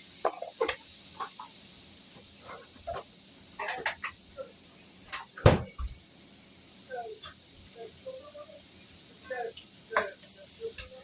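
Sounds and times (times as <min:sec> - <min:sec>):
vegetables sizzling in a pan: 0:00.0 - 0:11.0
sharp knock: 0:05.5 - 0:05.9.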